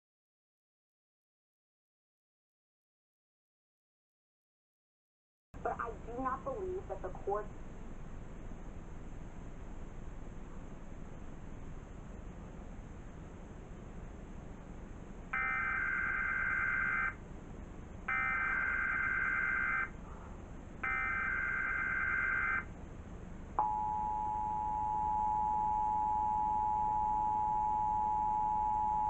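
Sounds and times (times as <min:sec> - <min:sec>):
steady two-tone attention signal: 0:23.6 - 0:29.0.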